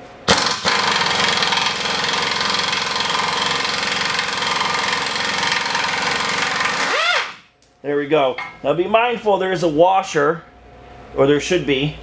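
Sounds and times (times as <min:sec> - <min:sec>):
impact wrench hammering: 0:00.3 - 0:07.5.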